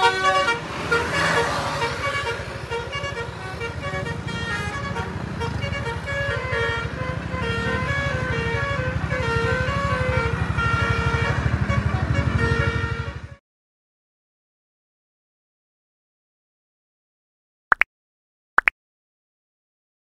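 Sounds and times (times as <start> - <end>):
multi-tone air horn melody: 0.0 - 13.4
bus engine running: 1.8 - 13.3.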